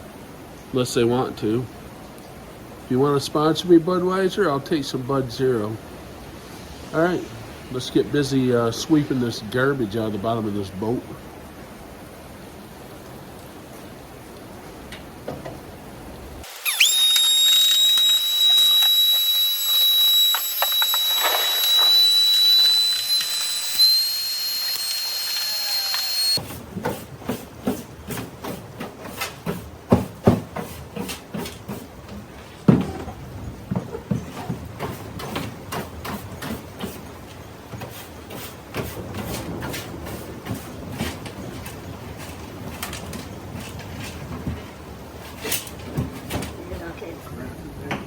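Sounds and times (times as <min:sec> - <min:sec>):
electric blower motor whining: 0:16.5 - 0:26.4
junk knocking and scraping in boat: 0:26.4 - 0:46.7.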